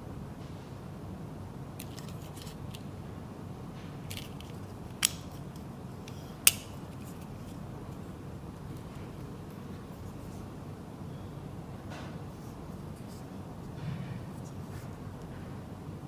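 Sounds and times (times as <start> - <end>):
folding knife clicks: 4.1 - 5.4, 6.1 - 6.9.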